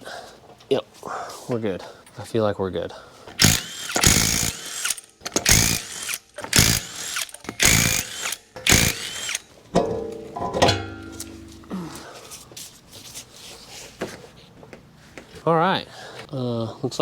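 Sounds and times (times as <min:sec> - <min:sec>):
impact wrench bursts: 0:03.4 - 0:09.5.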